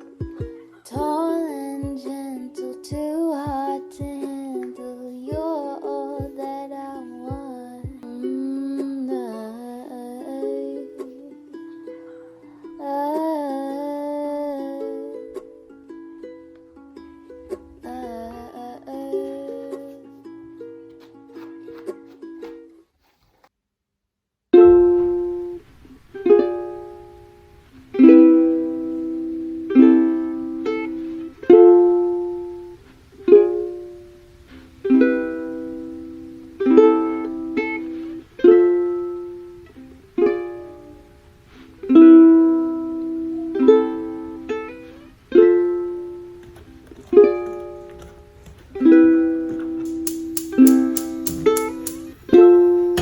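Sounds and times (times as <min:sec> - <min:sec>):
plucked string instrument strumming: 0:00.0 - 0:22.8, 0:24.6 - 0:53.0.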